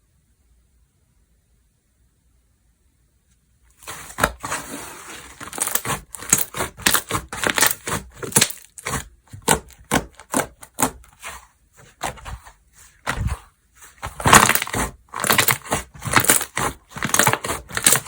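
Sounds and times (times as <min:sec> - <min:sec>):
slime popping and crackling: 0:05.4 - 0:11.2, 0:14.0 - 0:18.0.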